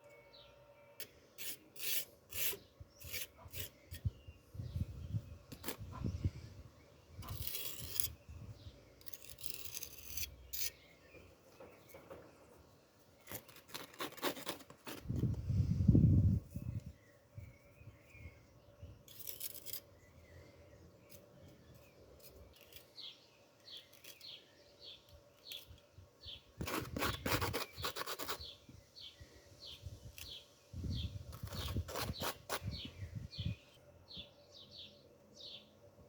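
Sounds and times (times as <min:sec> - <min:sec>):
file scraping: 0:01.0 - 0:04.1, 0:07.2 - 0:08.2, 0:09.0 - 0:10.8, 0:26.6 - 0:28.5, 0:31.4 - 0:32.8.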